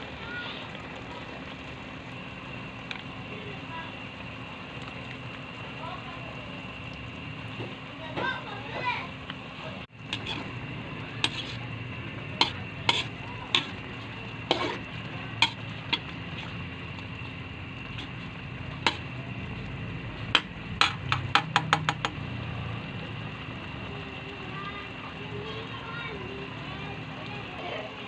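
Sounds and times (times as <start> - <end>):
food sizzling: 0.0 - 28.0
utensil stirring and tapping a pan: 10.0 - 22.2.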